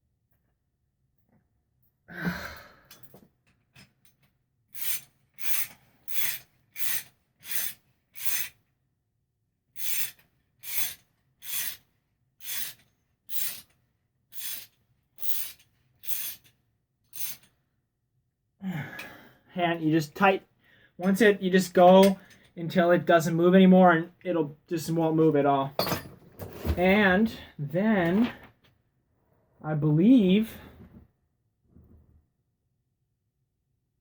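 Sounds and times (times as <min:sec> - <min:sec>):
ratchet wrench clicking: 0:04.8 - 0:08.6, 0:09.8 - 0:11.8, 0:12.4 - 0:13.7, 0:14.3 - 0:16.5, 0:17.1 - 0:17.5.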